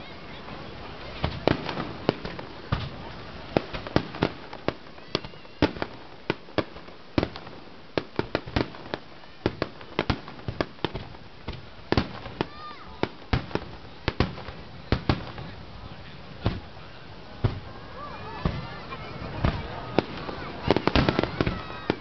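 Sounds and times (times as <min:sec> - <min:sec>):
fireworks bursting: 0:00.0 - 0:22.0.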